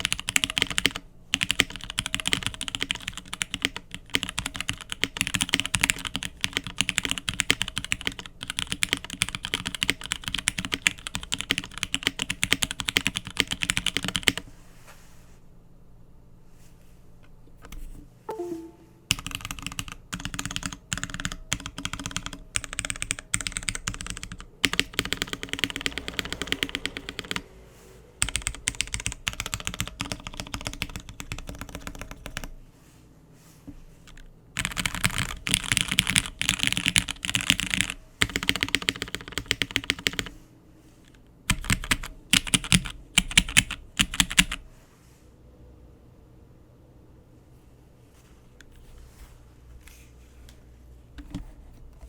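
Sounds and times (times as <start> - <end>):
mechanical keyboard typing: 0.0 - 14.4, 19.1 - 27.4, 28.2 - 32.5, 34.1 - 40.3, 41.5 - 44.6.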